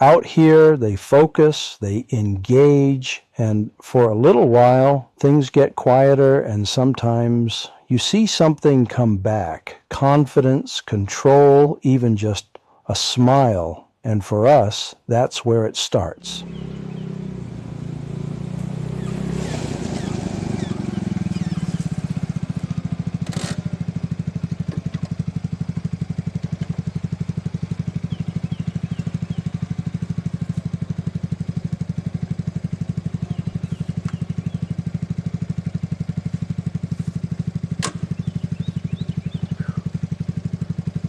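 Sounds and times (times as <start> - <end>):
small engine idling: 16.4 - 41.0.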